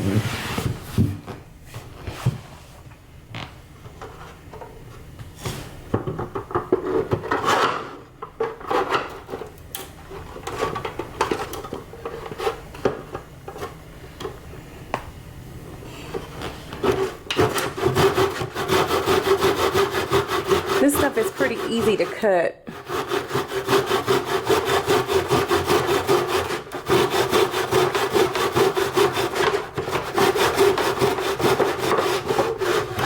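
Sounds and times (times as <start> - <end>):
hand saw cutting wood: 16.8 - 33.0.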